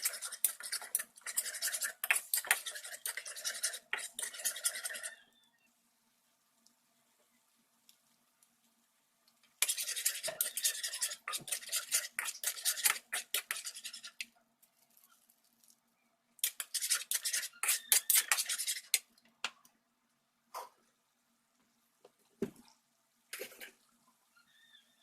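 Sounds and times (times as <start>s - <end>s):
utensil scraping against a pan: 0.0s - 5.2s, 9.6s - 14.3s, 16.4s - 19.0s.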